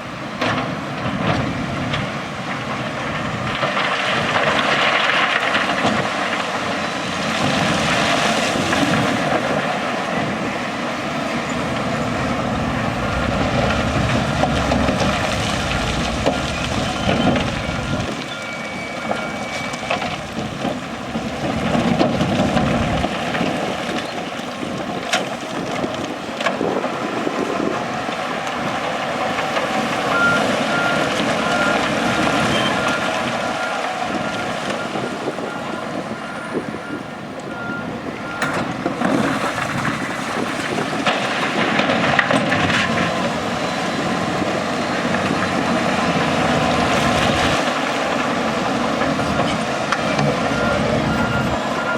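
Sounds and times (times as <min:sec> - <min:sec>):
diesel machinery running: 0:00.0 - 0:51.9
backup alarm beeping: 0:15.4 - 0:20.1, 0:50.1 - 0:51.9.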